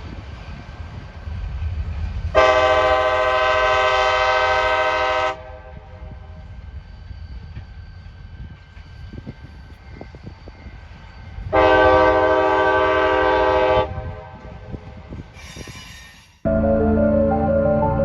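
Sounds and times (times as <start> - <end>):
train horn blast: 2.4 - 5.8, 11.5 - 14.3.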